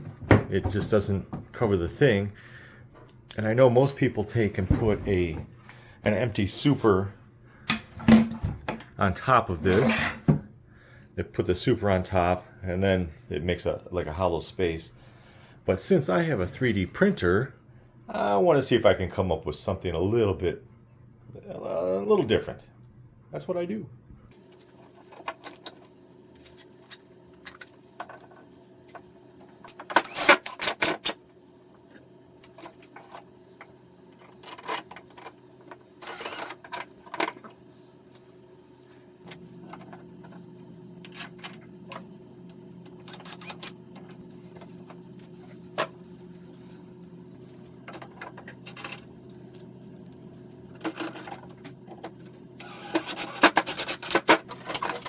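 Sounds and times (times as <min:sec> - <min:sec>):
printer motor and fan hum: 0:24.3 - 0:55.0.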